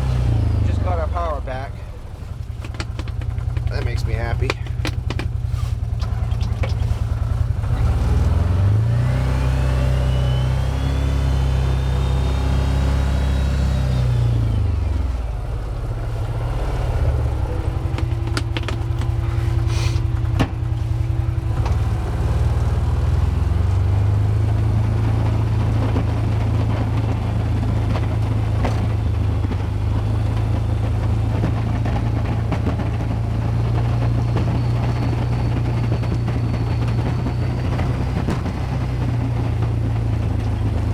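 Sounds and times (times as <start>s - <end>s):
engine revving: 0.0s - 40.9s
steady whine: 0.0s - 40.9s
sharp knocks: 2.5s - 5.7s.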